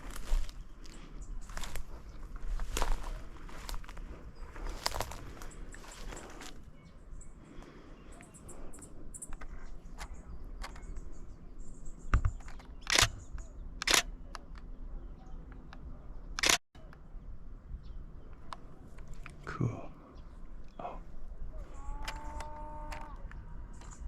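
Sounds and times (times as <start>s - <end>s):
camera shutter clicks: 12.8s - 14.1s, 16.4s - 16.6s.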